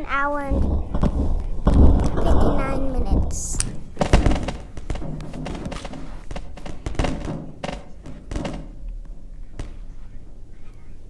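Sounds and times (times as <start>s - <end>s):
hard object knocking: 0.5s - 8.7s.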